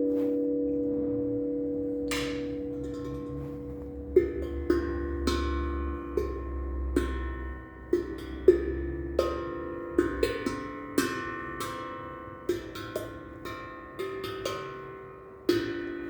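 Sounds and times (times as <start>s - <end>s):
ringing bell-like percussion: 0.0s - 10.7s.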